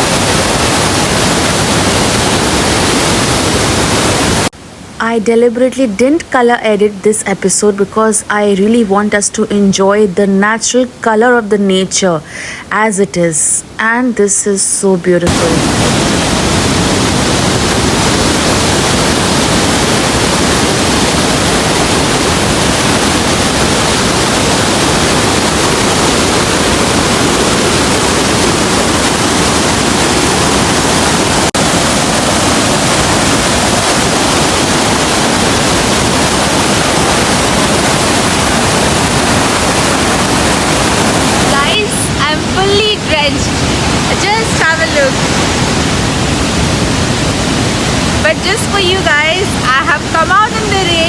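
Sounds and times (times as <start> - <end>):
waterfall rushing: 0.0 - 5.0, 15.3 - 51.0.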